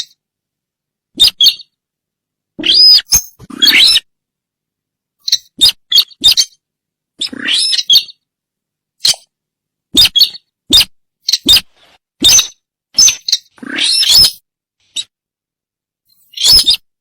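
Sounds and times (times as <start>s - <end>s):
recorded bird calls: 1.2s - 1.8s, 2.6s - 4.1s, 5.2s - 6.6s, 7.2s - 8.3s, 9.0s - 15.2s, 16.1s - 16.9s.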